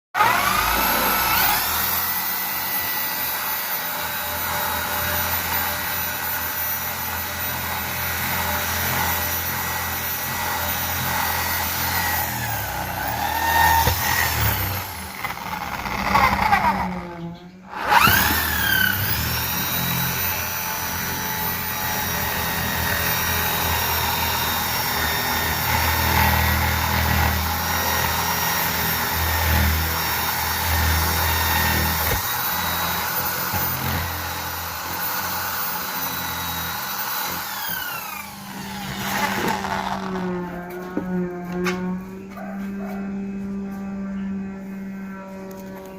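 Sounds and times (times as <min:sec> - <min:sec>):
electric drill whining: 0:00.2 - 0:42.3.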